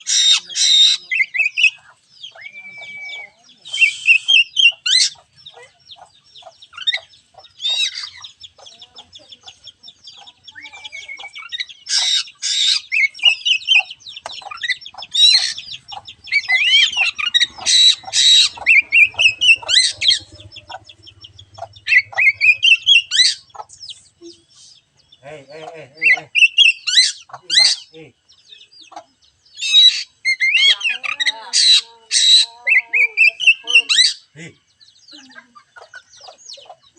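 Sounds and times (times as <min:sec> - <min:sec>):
harsh rasping bird notes: 0:00.0 - 0:05.2
bird singing chirps and whistles: 0:00.7 - 0:05.2, 0:10.0 - 0:24.9, 0:26.1 - 0:28.8, 0:32.2 - 0:34.3.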